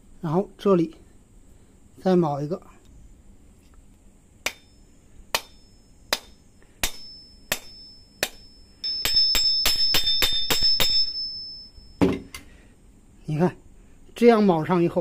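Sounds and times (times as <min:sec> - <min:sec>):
hammer striking copper rivet: 0:04.4 - 0:04.7, 0:05.3 - 0:11.2
light hammer taps with metallic ring: 0:05.4 - 0:12.2.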